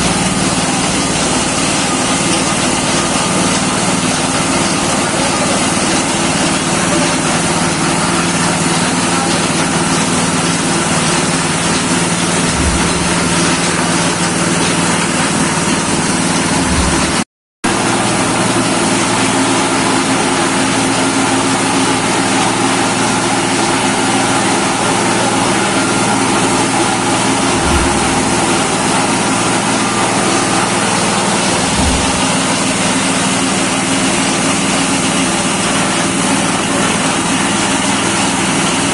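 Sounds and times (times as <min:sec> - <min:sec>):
machine drone with grinding hiss: 0:11.8 - 0:14.4, 0:16.4 - 0:17.2, 0:26.8 - 0:29.1, 0:31.3 - 0:32.7.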